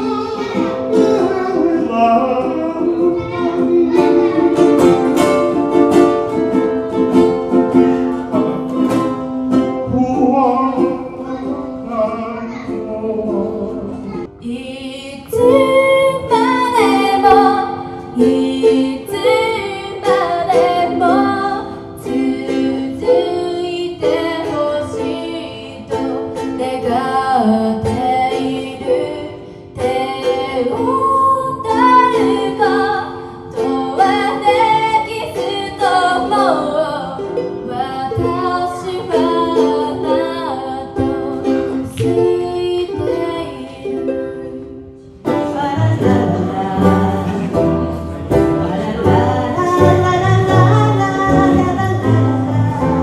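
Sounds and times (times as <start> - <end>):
plucked string instrument music: 0.0 - 14.6, 15.3 - 53.0
bass accompaniment: 45.3 - 53.0
gliding melody line: 45.4 - 53.0.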